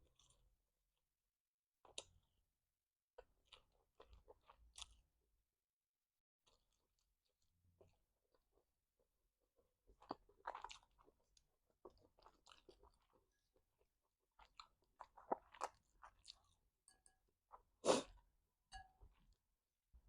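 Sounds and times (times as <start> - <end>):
chewing and crunching food: 0.0 - 0.6, 1.8 - 2.3, 3.2 - 5.2, 6.4 - 19.5.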